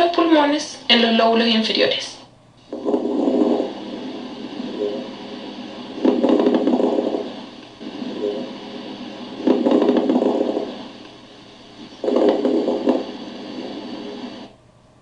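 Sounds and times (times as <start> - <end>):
lung crackles: 2.6 - 14.5
breathing through stethoscope: 2.8 - 14.5.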